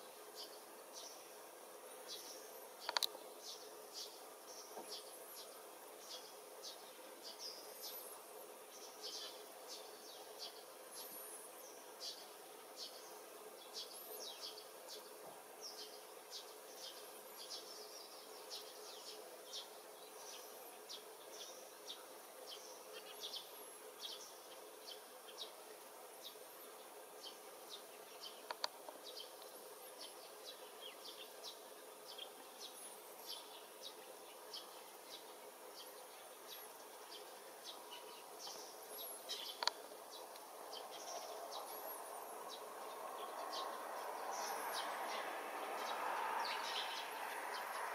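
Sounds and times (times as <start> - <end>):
faint background hiss: 0.0 - 47.9
sharp clicks: 2.9 - 3.1.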